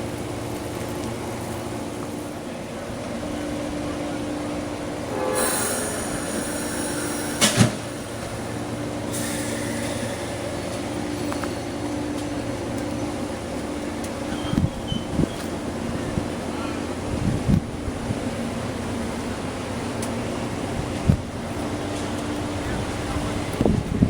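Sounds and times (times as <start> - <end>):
train rolling past: 0.0 - 24.0
high-pitched squeal: 5.2 - 10.7.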